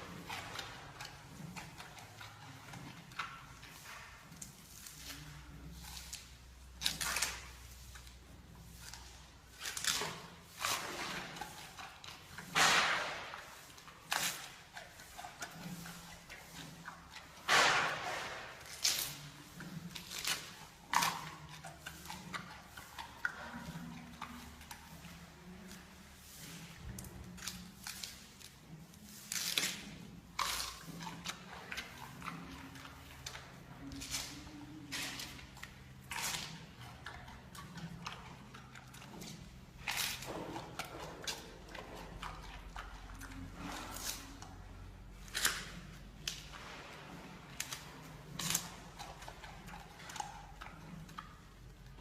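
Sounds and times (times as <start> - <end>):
panda crunching bamboo: 0.0 - 52.0.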